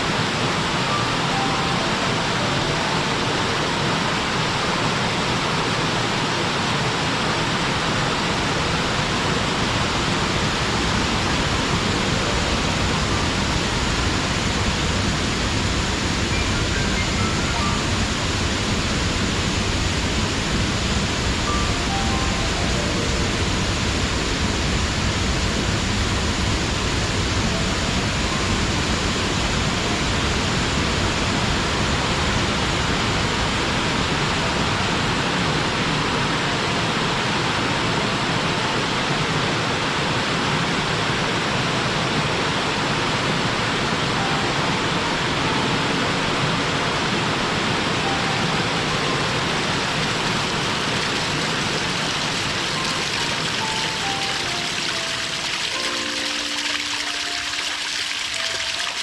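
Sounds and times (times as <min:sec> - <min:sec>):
waterfall pouring: 0:08.1 - 0:34.0, 0:48.9 - 0:59.0.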